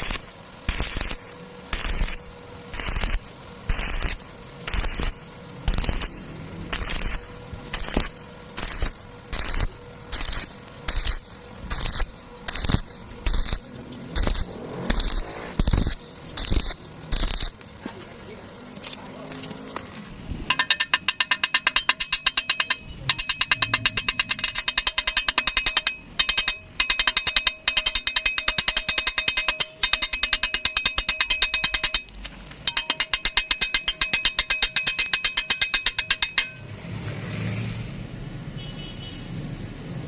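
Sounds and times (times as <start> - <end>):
rapid ringing metallic strikes: 0.0 - 17.6, 20.5 - 36.8.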